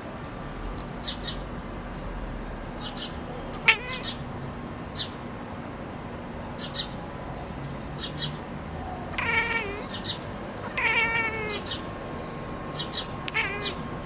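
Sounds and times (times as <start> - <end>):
cat chirping: 1.0 - 1.4, 2.8 - 4.3, 4.9 - 5.2, 6.6 - 7.0, 8.0 - 8.4, 9.0 - 14.0.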